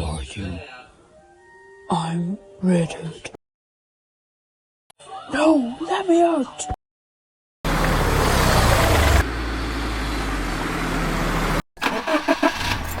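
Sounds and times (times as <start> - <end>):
motor vehicle engine running: 7.7 - 11.6.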